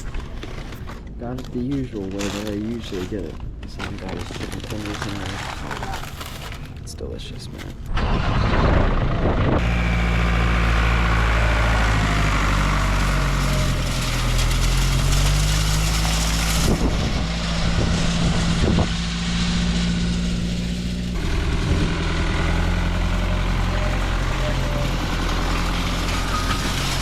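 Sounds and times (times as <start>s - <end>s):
vehicle engine running: 8.6s - 27.0s.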